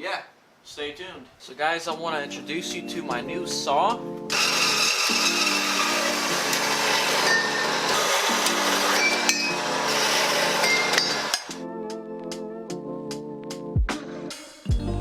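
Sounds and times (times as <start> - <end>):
power saw cutting steel pipe: 4.3 - 11.6.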